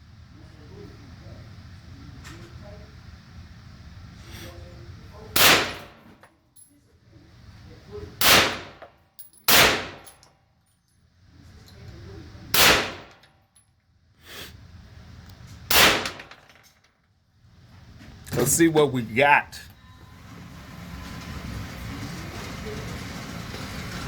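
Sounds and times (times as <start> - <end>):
gunshots with echo: 5.4 - 5.9, 9.5 - 10.0, 12.6 - 13.1, 15.7 - 16.2.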